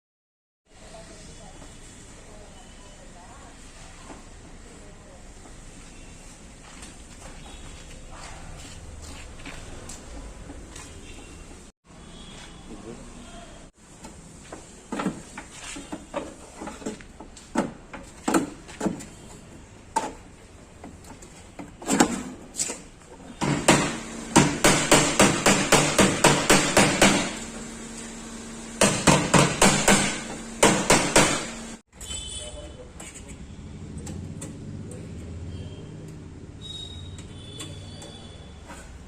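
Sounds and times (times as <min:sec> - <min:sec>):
hammer on metal panel: 0:23.4 - 0:27.4, 0:28.8 - 0:31.7.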